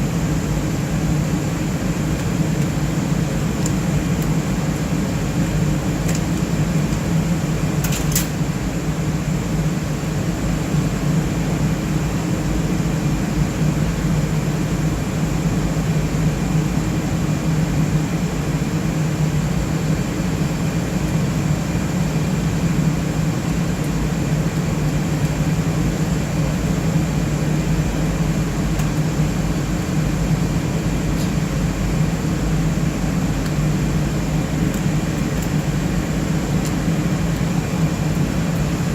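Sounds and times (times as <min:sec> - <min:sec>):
cooling fans whirring: 0:00.0 - 0:38.9.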